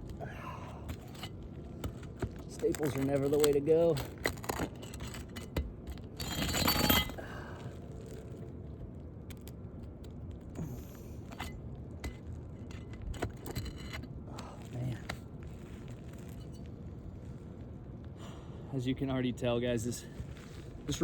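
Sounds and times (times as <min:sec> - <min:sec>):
metal tool scraping shingles: 0:00.8 - 0:07.3, 0:11.2 - 0:14.1.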